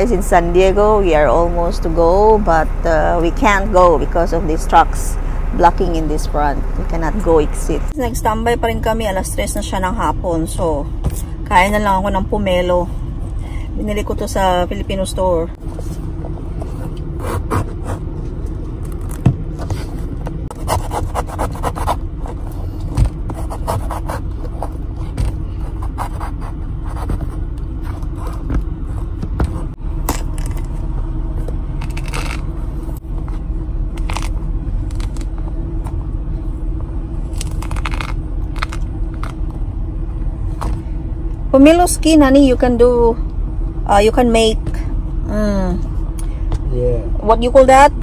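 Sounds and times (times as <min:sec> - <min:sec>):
low engine hum: 0:00.0 - 0:48.0
fruit rind tearing and scraping: 0:31.8 - 0:32.5, 0:33.9 - 0:35.3, 0:37.3 - 0:39.4.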